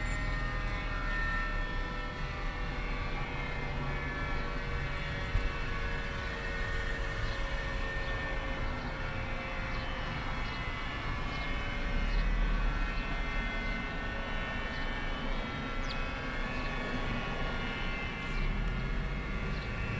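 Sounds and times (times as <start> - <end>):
warning siren steady tone: 0.0 - 19.9.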